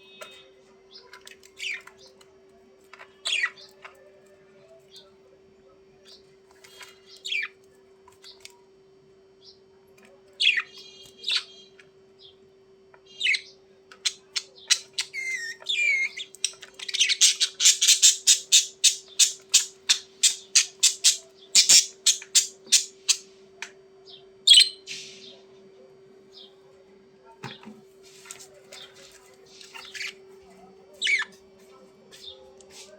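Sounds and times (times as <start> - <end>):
budgerigars chirping and squawking: 1.6 - 2.0, 3.0 - 3.7, 6.7 - 7.5, 10.4 - 11.8, 13.2 - 23.3, 24.5 - 25.3, 29.6 - 30.2, 31.0 - 31.4
sharp rapidly repeated bird notes: 17.2 - 23.2.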